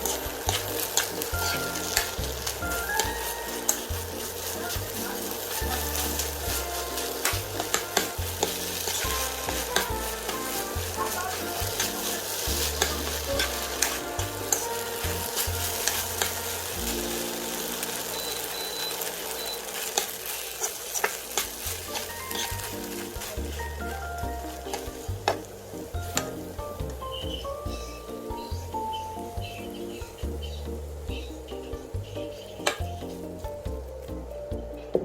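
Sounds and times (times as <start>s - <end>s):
rice sizzling in a frying pan: 0.0s - 30.4s
spatula clicking and scraping pan: 11.4s - 16.9s.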